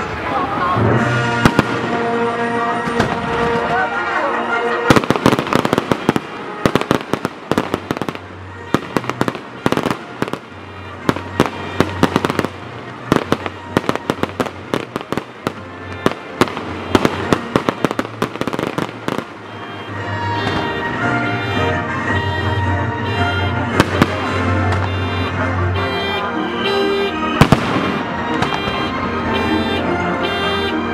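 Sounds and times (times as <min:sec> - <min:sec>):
fireworks bangs and crackles: 0:00.0 - 0:30.1
music: 0:00.0 - 0:30.9.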